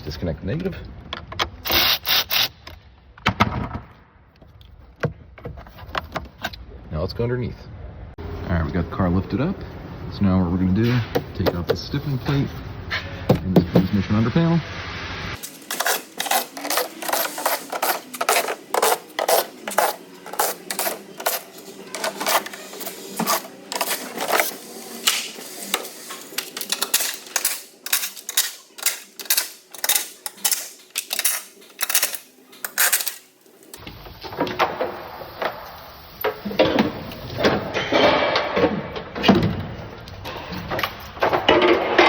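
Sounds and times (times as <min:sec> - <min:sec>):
tool clatter: 0:15.4 - 0:33.8.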